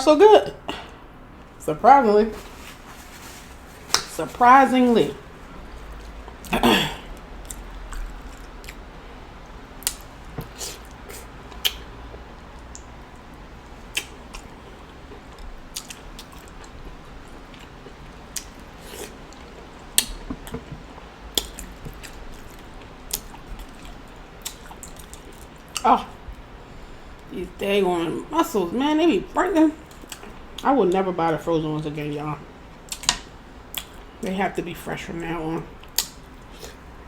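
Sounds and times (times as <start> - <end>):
person chewing wetly: 5.6 - 8.8, 9.8 - 26.5, 29.8 - 30.6, 32.8 - 34.2
lip smacks and clicks: 9.8 - 11.9, 13.9 - 14.5, 18.4 - 20.2, 21.3 - 25.9, 35.8 - 36.8.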